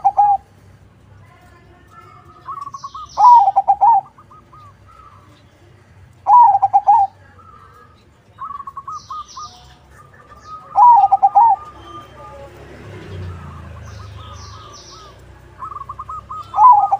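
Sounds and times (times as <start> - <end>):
dove cooing: 0.0 - 0.5, 2.4 - 5.4, 6.2 - 7.2, 8.4 - 12.5, 13.2 - 16.9
high bird chirps: 2.3 - 5.5, 6.2 - 12.4, 13.0 - 16.9.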